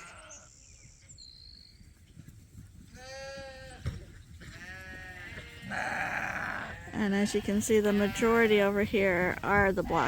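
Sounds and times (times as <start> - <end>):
lambs bleating: 0.0 - 0.5, 3.0 - 3.9, 4.5 - 8.8.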